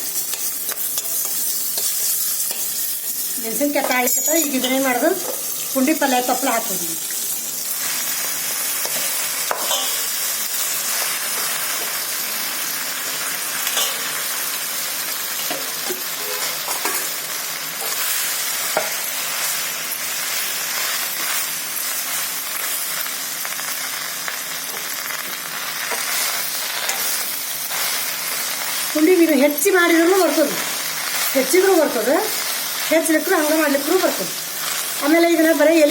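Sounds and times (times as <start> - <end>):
food sizzling in oil: 0.0 - 35.9
spoon clinking on pan: 9.5 - 10.1, 13.6 - 14.1.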